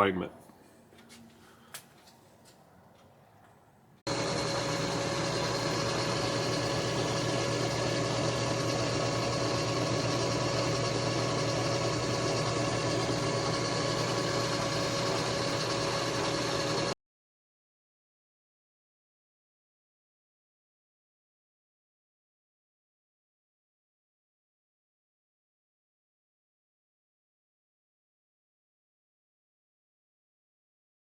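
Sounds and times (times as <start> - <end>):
machine tool humming: 4.1 - 17.0.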